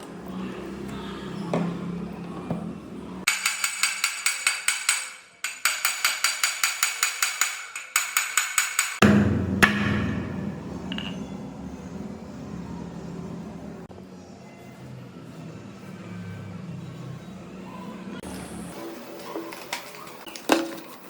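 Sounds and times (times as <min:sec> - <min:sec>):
rapid wood-block-like clicks: 0:03.3 - 0:09.0
low rumble: 0:09.0 - 0:13.9.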